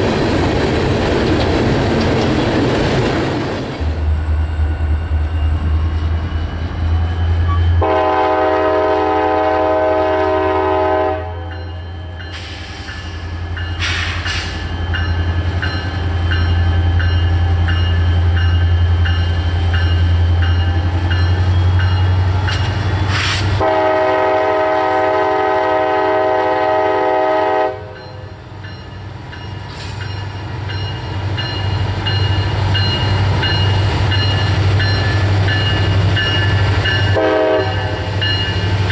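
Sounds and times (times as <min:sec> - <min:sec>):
diesel locomotive rumbling: 0:00.0 - 0:38.9
locomotive air horn blasts: 0:07.7 - 0:11.5, 0:23.2 - 0:28.0, 0:37.1 - 0:38.0.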